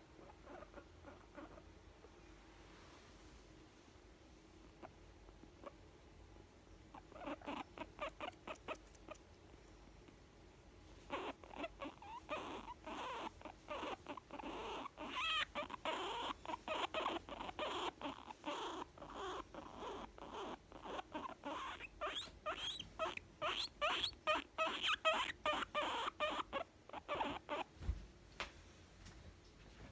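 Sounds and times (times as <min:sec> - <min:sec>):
guinea pig squeaking: 0:00.2 - 0:01.8, 0:06.9 - 0:09.3, 0:11.0 - 0:27.7.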